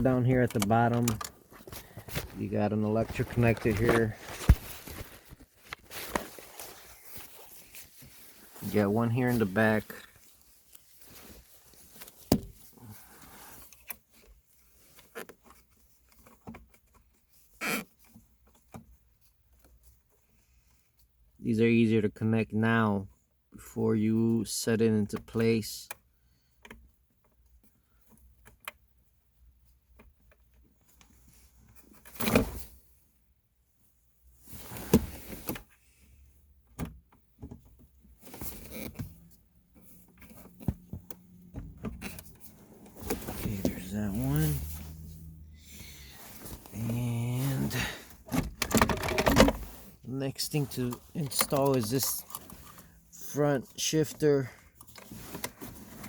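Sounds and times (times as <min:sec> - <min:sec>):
hands rustling: 0:01.4 - 0:12.7, 0:42.1 - 0:48.2
plastic parts clicking and knocking: 0:48.2 - 0:49.6.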